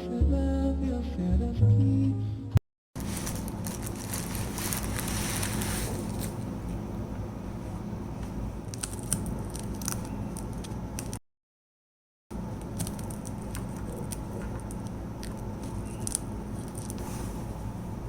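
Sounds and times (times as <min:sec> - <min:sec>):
steady low hum: 0:00.0 - 0:11.2, 0:12.3 - 0:18.0
rustling and scraping: 0:03.0 - 0:06.5, 0:12.8 - 0:17.6.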